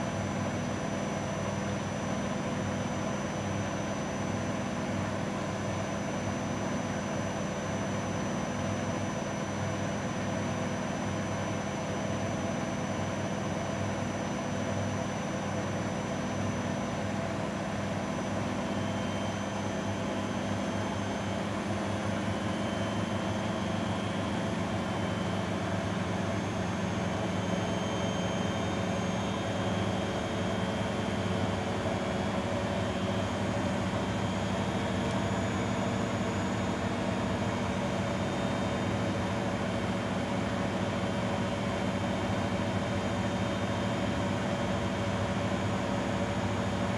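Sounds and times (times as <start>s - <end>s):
washing machine motor hum: 15.8s - 46.9s.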